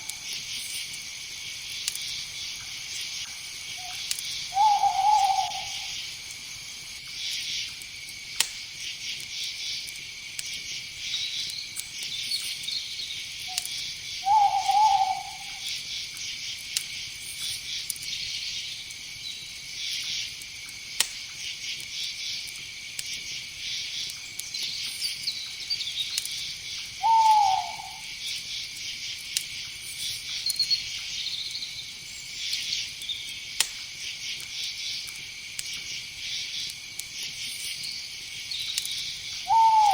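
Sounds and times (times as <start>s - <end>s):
crickets chirring: 0.0s - 39.9s
owl hooting: 3.8s - 6.0s, 14.2s - 15.7s, 27.0s - 28.1s, 39.4s - 39.9s.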